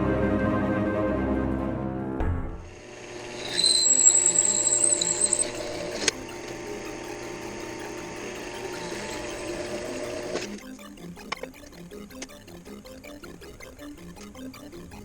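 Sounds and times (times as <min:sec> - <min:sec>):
background music: 0:00.0 - 0:04.7
power tool motor whining: 0:03.3 - 0:06.1.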